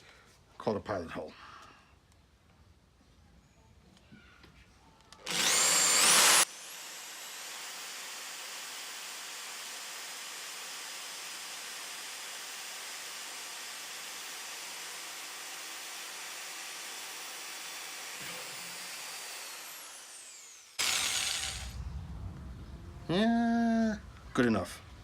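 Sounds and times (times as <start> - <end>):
power drill drilling into steel: 5.2 - 21.8.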